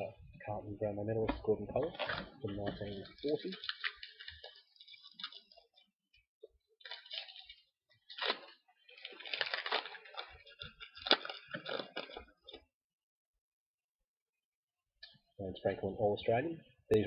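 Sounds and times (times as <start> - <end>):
foil wrappers crinkling: 1.9 - 5.9, 6.8 - 12.7.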